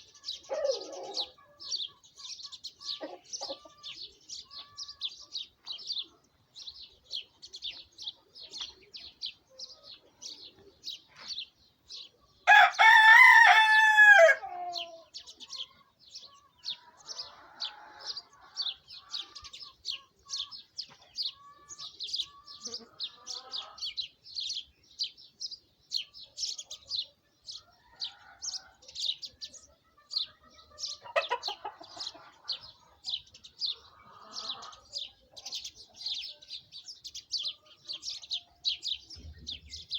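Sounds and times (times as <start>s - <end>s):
hens clucking: 2.5s - 6.3s, 15.8s - 24.0s, 30.2s - 36.3s
rooster crowing: 12.5s - 15.0s
high bird chirping: 14.7s - 39.9s.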